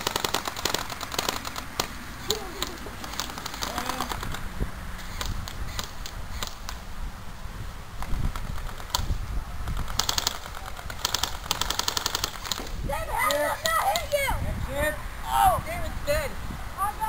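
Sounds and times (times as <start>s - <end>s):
airsoft gun shots: 0.0s - 4.4s, 9.8s - 14.0s.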